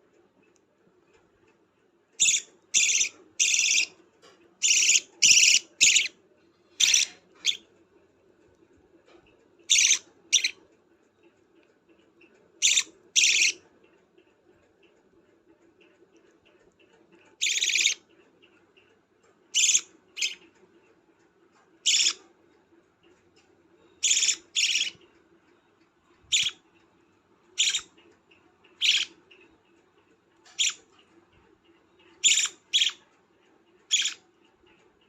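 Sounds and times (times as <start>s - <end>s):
bird chick rasping begging calls: 2.2s - 3.9s, 4.6s - 6.1s, 6.8s - 7.6s, 9.7s - 10.6s, 12.6s - 13.6s, 17.4s - 18.0s, 19.6s - 20.4s, 21.9s - 22.2s, 24.0s - 25.0s, 26.3s - 26.6s, 27.6s - 27.9s, 28.7s - 29.2s, 32.2s - 33.0s, 33.9s - 34.2s.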